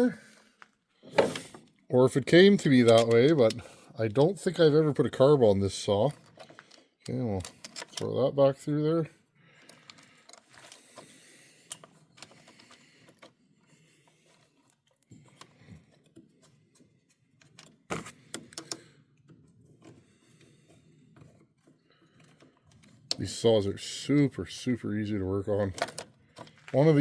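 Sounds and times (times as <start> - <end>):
small parts and tools rattling: 2.4 - 3.8, 5.2 - 8.4, 9.4 - 24.0, 25.5 - 27.0.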